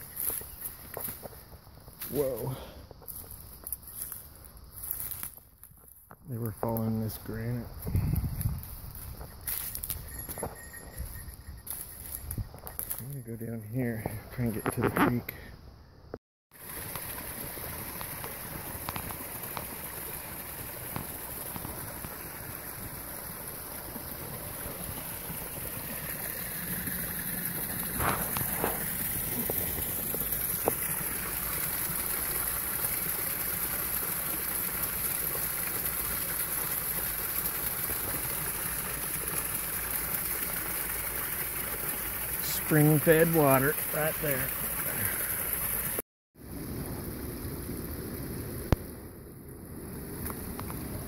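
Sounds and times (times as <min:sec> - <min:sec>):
creek water rushing: 0:16.6 - 0:46.0.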